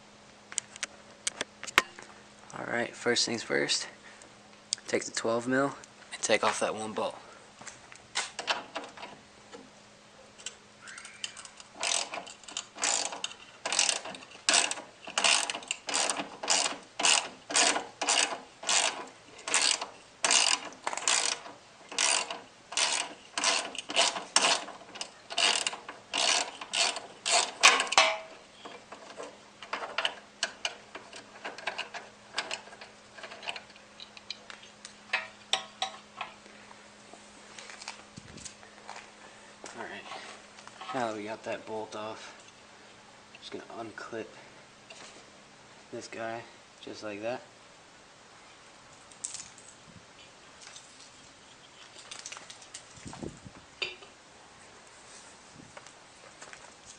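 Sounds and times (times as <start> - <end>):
ratchet wrench clicking: 10.9 - 28.2.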